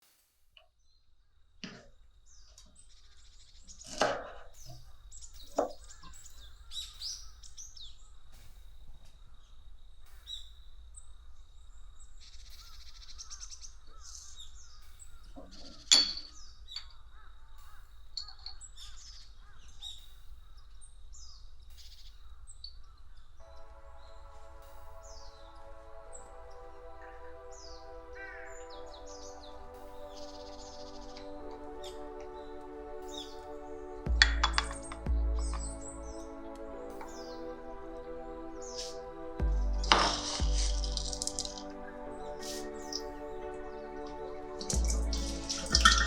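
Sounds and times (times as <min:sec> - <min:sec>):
birds chirping and calling: 0:02.3 - 0:08.2, 0:24.0 - 0:39.1, 0:39.8 - 0:46.0
music: 0:04.4 - 0:09.1, 0:10.0 - 0:11.0, 0:14.8 - 0:15.6, 0:23.4 - 0:46.0.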